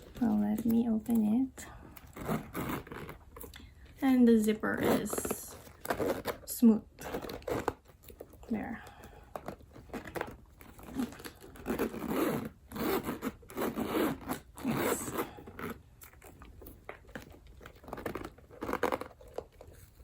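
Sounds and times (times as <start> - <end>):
zipper being pulled: 2.0 - 3.5, 4.5 - 8.3, 9.4 - 20.0.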